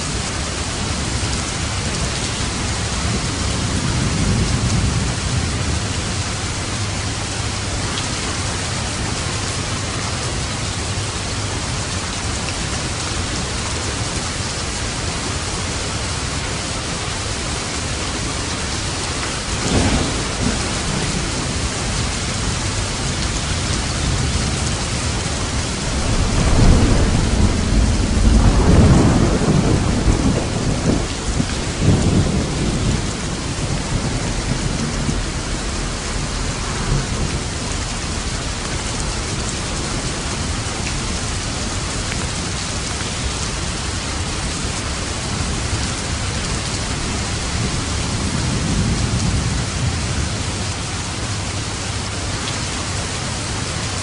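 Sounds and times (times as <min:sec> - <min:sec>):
heavy rainfall: 0:00.0 - 0:54.0
distant thunder rumbling: 0:19.0 - 0:41.9.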